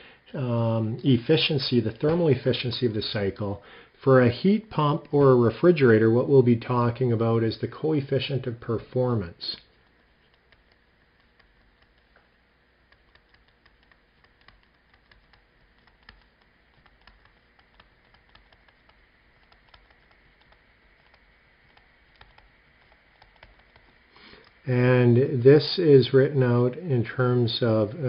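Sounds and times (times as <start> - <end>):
faint small clicks and ticks: 1.4 - 3.8, 8.1 - 24.7.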